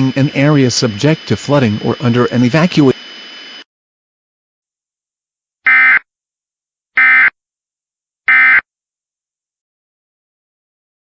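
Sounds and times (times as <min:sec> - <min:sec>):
digital data bursts: 0:00.0 - 0:03.7.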